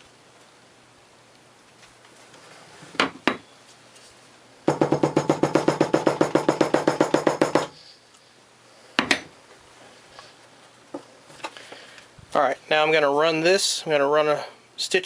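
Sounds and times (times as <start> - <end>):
sharp knocks: 4.7 - 7.8.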